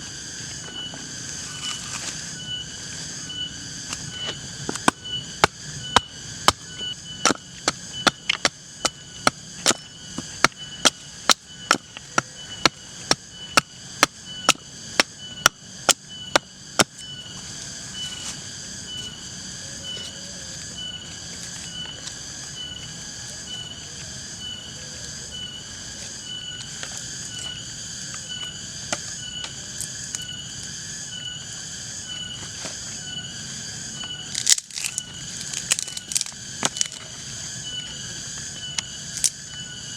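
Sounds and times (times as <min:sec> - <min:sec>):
insects droning: 0:00.0 - 0:39.9
wood being chopped: 0:04.7 - 0:06.6, 0:07.2 - 0:17.0.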